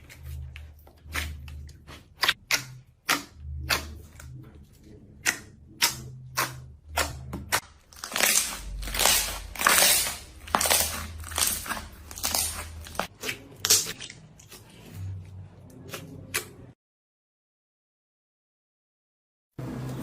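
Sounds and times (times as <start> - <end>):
crunchy material being crushed: 7.5 - 14.0.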